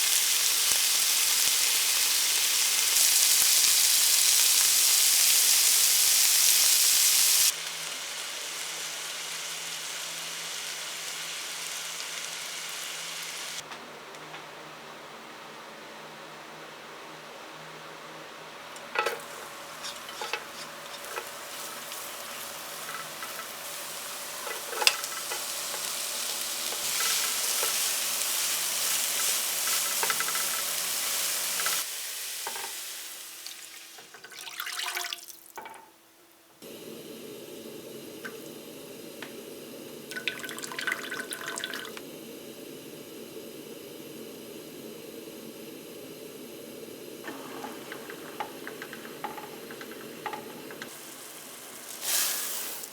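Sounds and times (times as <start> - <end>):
kitchen noise: 18.7 - 36.0, 40.0 - 42.0, 47.2 - 52.9
utensils clinking: 18.8 - 32.8, 47.2 - 52.9
water running from tap: 18.9 - 35.8, 40.1 - 42.0, 47.2 - 52.9.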